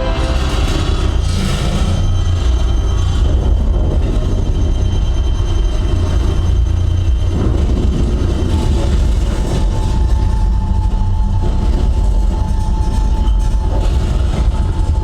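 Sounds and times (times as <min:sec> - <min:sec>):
steady higher tone: 0:00.0 - 0:01.7
deep bass rumble: 0:00.0 - 0:03.1.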